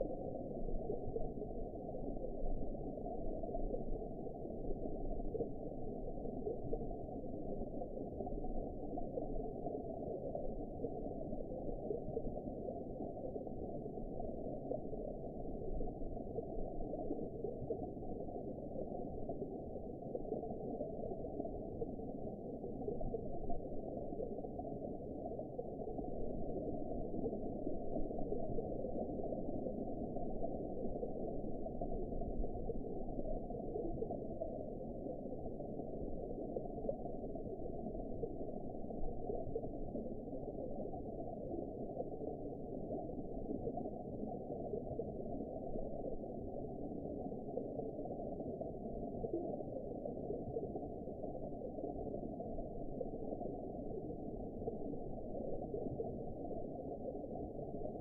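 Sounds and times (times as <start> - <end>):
muffled underwater water rush: 0.0 - 58.0.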